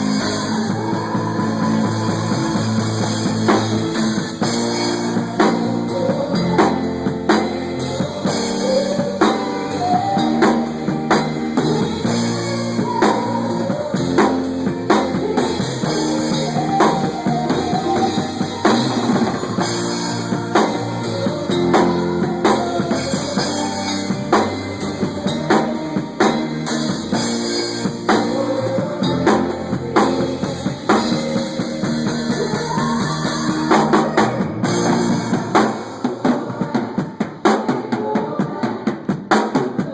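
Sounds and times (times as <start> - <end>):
electric guitar chords and melody: 0.0 - 36.3
drum kit beat: 0.0 - 39.9.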